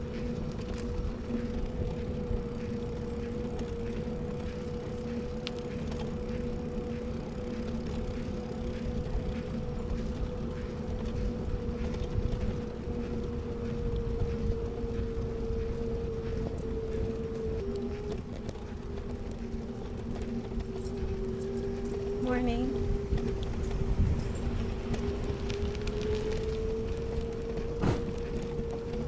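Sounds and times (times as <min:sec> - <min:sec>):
faint ticks: 0:00.0 - 0:22.3
low rumbling noise: 0:00.0 - 0:29.0
steady mechanical hum: 0:00.0 - 0:29.0.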